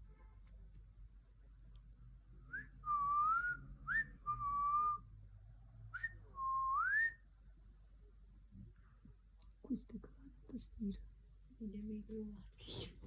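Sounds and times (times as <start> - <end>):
whistled notes: 2.5 - 5.0, 6.0 - 7.2.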